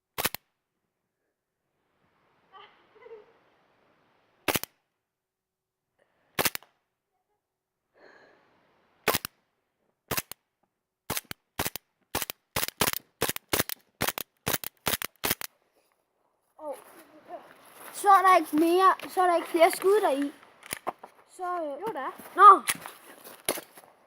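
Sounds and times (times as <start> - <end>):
air pistol shots: 4.4 - 4.8, 6.4 - 6.7, 9.0 - 9.3, 10.1 - 10.4, 11.1 - 15.5.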